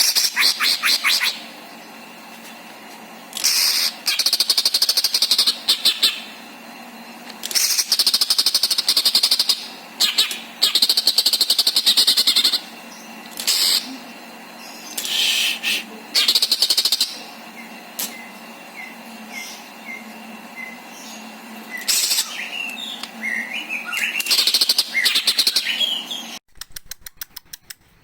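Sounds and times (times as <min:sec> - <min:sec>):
bird singing rattling trills: 0:03.4 - 0:06.4, 0:07.5 - 0:13.9, 0:16.2 - 0:26.4.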